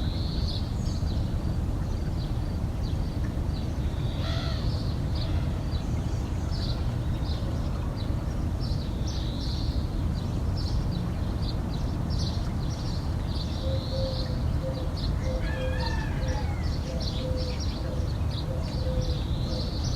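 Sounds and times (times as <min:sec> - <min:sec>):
steady low rumble: 0:00.0 - 0:13.4.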